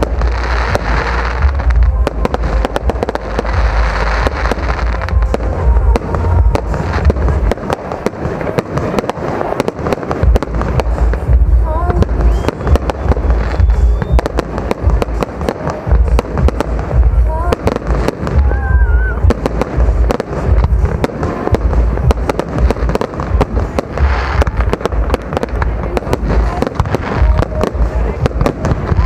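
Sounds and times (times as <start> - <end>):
fireworks bursting and banging: 0.0 - 29.0
fireworks crackling: 0.0 - 29.0
heavy low rumble: 0.0 - 29.0.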